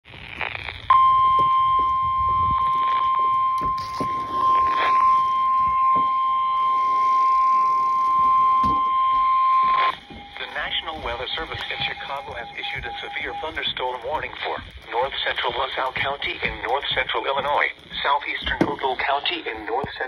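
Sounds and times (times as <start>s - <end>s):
steady high alert beep: 7.5s - 15.3s.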